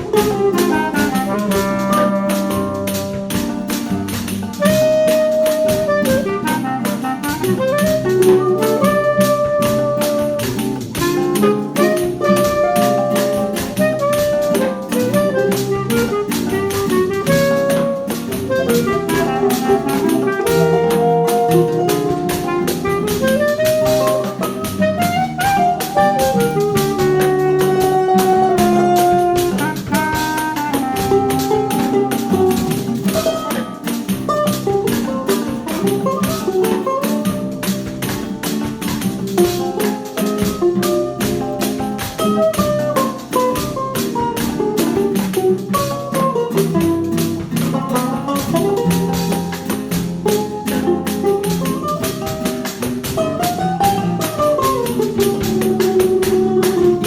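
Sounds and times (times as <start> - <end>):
tuba bass: 0.0 - 38.3
clarinet melody: 0.0 - 57.0
guitars and mandolin: 0.0 - 57.0
pandeiro and drum kit rhythm: 0.0 - 57.0.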